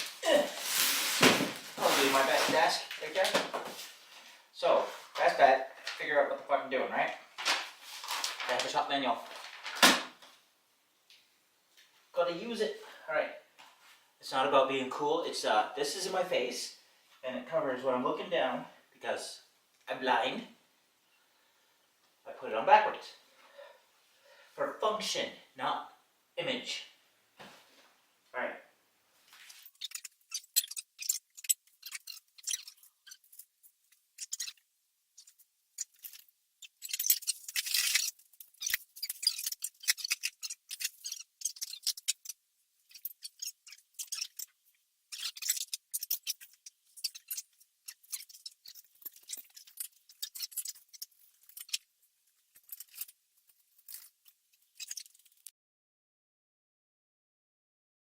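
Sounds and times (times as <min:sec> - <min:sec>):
small metal parts clicking and rattling: 0:29.4 - 0:34.6, 0:35.2 - 0:55.5.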